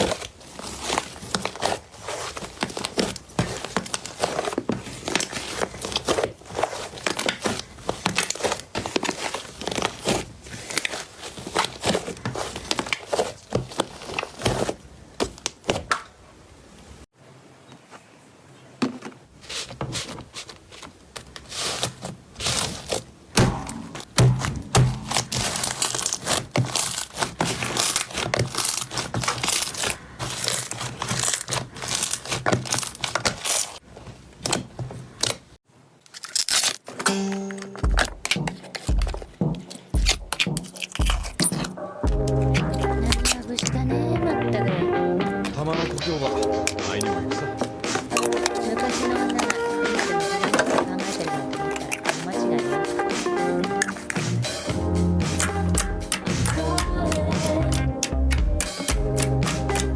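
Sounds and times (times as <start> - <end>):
slime wet clicking and crackling: 39.7 - 43.8.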